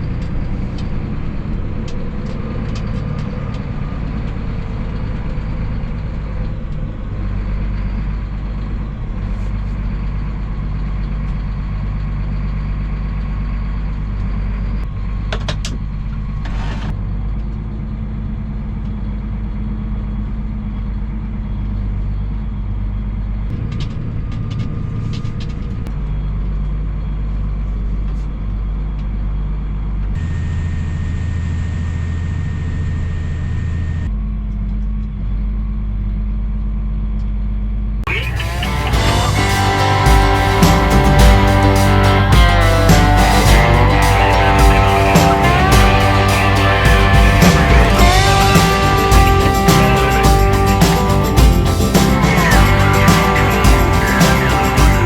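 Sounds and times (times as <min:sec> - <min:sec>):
heavy machinery engine running: 0:38.1 - 0:55.0
steady high whine: 0:38.1 - 0:55.0.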